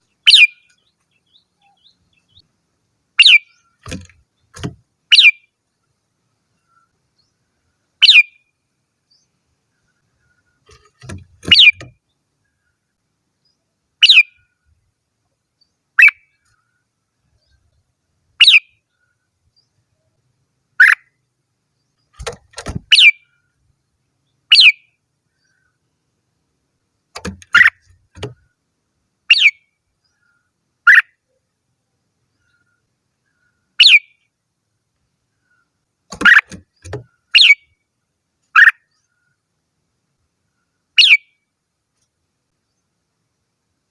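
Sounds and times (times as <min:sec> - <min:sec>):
bird whistled calls: 0:00.2 - 0:00.7, 0:03.2 - 0:03.6, 0:05.1 - 0:05.5, 0:08.0 - 0:08.4, 0:11.5 - 0:11.8, 0:14.0 - 0:14.4, 0:16.0 - 0:16.2, 0:18.4 - 0:18.8, 0:20.8 - 0:21.1, 0:22.9 - 0:23.2, 0:24.5 - 0:24.9, 0:29.3 - 0:29.6, 0:33.8 - 0:34.2, 0:37.4 - 0:37.7, 0:38.6 - 0:38.8, 0:41.0 - 0:41.3.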